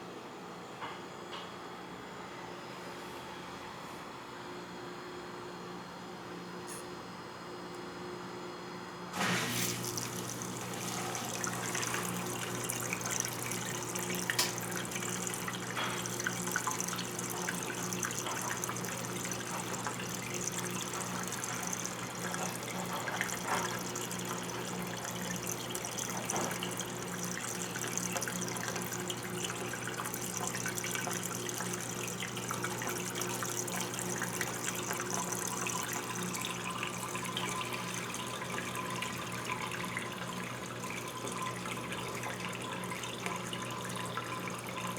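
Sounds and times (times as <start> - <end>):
washing machine motor hum: 9.1 - 44.9
water splashing in washing machine: 9.2 - 44.9.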